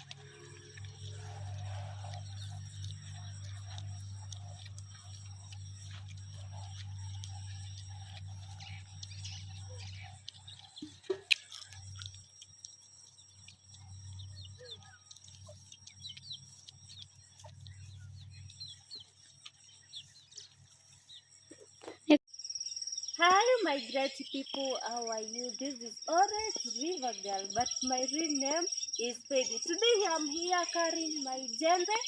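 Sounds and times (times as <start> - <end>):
low hum: 0.0 - 12.2
birds chirping: 0.0 - 32.0.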